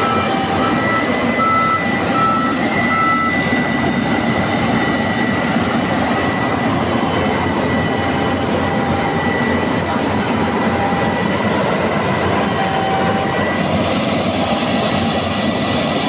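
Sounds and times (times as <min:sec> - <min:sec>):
combine harvester running: 0:00.0 - 0:16.0
high whine: 0:00.0 - 0:16.0
reversing alarm beeping: 0:00.0 - 0:16.0.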